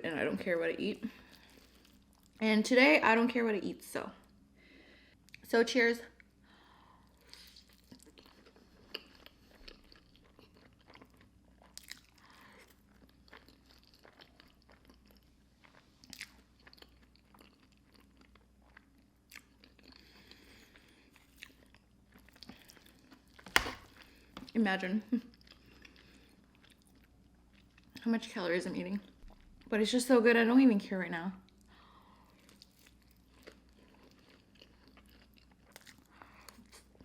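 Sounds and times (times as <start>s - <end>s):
person chewing food: 7.0s - 24.5s, 25.4s - 28.0s, 32.2s - 37.0s.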